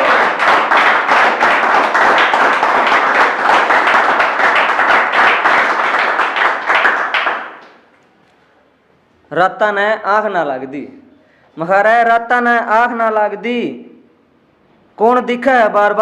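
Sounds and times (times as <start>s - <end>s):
audience applauding: 0.0s - 7.8s.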